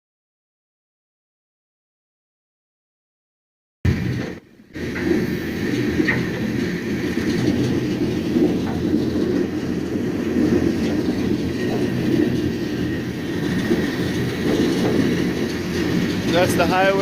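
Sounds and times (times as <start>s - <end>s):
light clatter: 3.9s - 17.0s
train wheels rumbling on rail: 3.9s - 17.0s.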